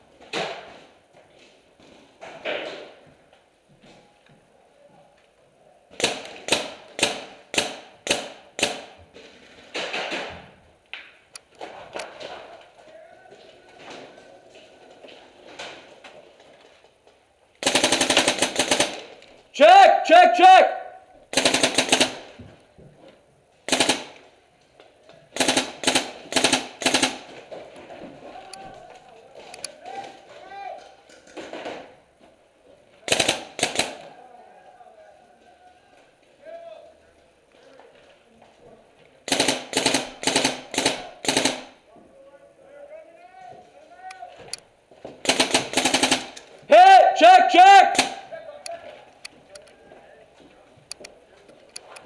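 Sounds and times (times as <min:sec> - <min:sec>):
paintball marker rapid shots: 0:17.6 - 0:19.2, 0:21.3 - 0:22.3, 0:23.7 - 0:24.2, 0:25.4 - 0:27.4, 0:33.1 - 0:34.0, 0:39.3 - 0:41.8, 0:45.2 - 0:46.5.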